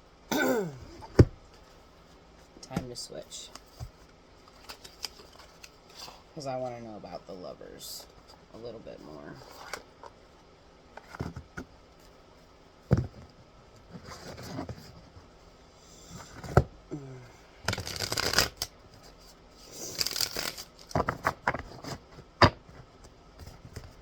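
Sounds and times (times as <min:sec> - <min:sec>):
cards rustling while shuffled: 0:03.4 - 0:06.3, 0:17.7 - 0:19.1, 0:19.7 - 0:22.1
cards tapping and slapping: 0:17.7 - 0:18.7.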